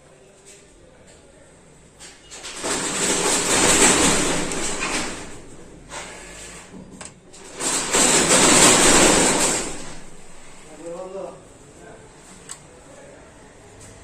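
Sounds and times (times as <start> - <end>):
harsh scraping noise: 2.4 - 6.8, 7.4 - 11.0.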